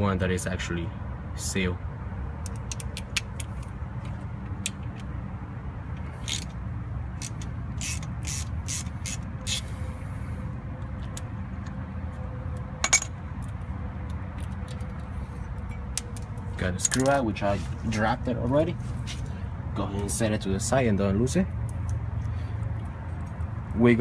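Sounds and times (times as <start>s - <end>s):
metallic clicks of a screw bit: 7.2s - 9.6s.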